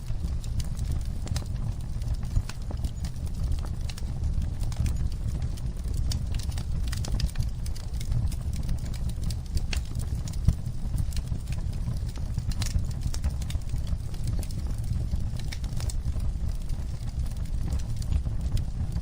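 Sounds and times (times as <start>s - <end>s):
low rumble of flames: 0.0s - 19.0s
wood fire crackling and popping: 0.0s - 19.0s.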